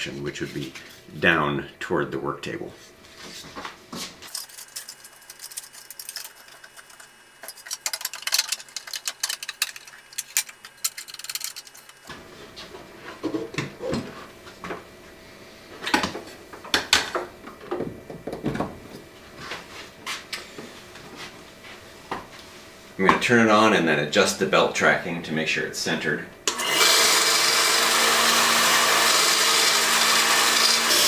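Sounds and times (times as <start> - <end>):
belt sander parts clicking and rubbing: 4.3 - 12.1.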